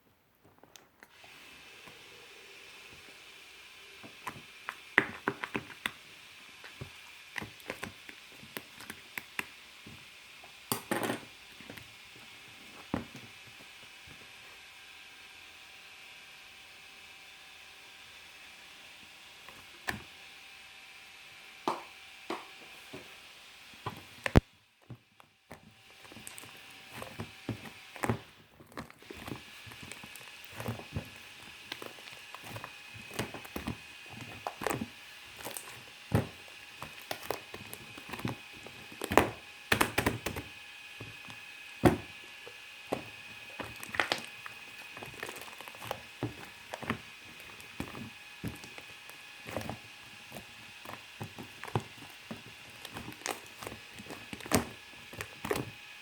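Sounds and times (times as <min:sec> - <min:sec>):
hand pressing slime: 0:23.9 - 0:55.8.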